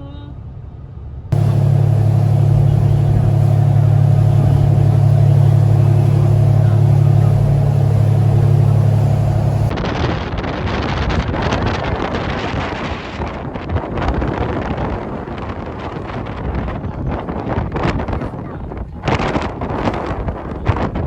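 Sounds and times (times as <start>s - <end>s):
low engine drone: 1.4s - 9.7s
wind buffeting microphone: 1.4s - 21.0s.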